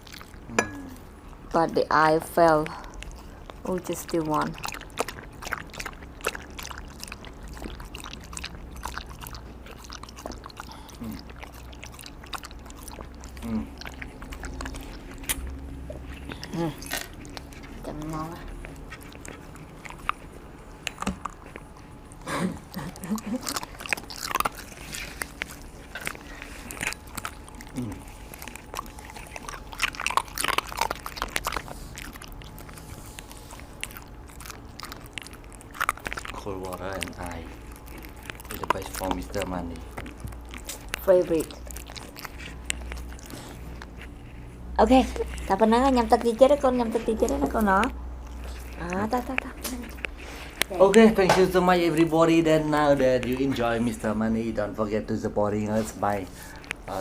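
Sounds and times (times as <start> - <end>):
dog crunching ice: 23.4 - 44.1, 45.4 - 54.3
dog lapping water from a bowl: 34.4 - 41.5.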